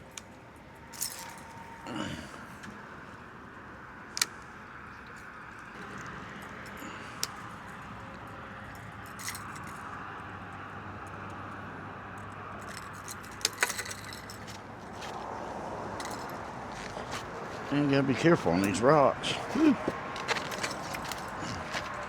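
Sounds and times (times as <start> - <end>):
metallic clicks and jingles: 0.0 - 1.8, 4.1 - 15.2, 15.9 - 17.8, 19.5 - 22.0.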